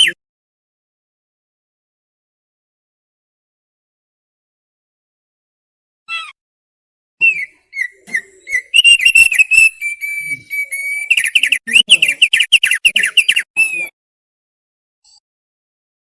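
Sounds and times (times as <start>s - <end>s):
bird singing whistled notes: 7.2s - 13.9s.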